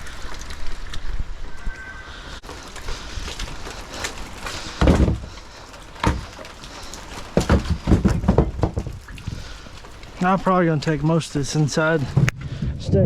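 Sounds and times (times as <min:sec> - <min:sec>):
firewood thudding onto pile: 0:02.4 - 0:12.3.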